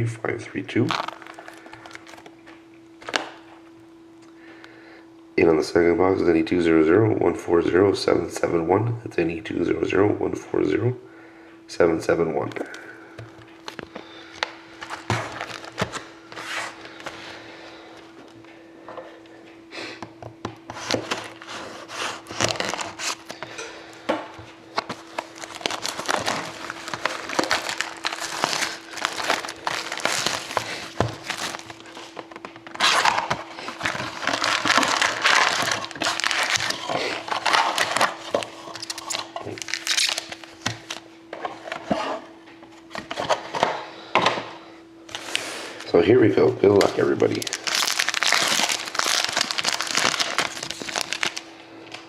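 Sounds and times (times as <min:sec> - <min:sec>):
plastic wrapping crinkling and tearing: 0:00.7 - 0:03.4, 0:12.5 - 0:17.2, 0:20.8 - 0:23.6, 0:24.3 - 0:41.1, 0:46.7 - 0:51.5.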